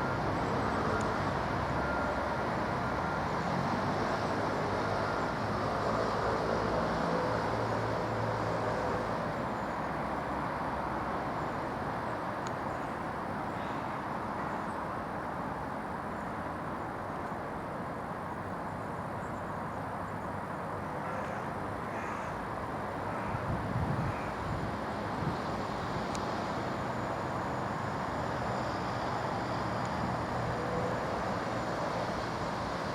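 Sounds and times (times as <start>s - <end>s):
diesel locomotive engine running: 22.6s - 32.9s.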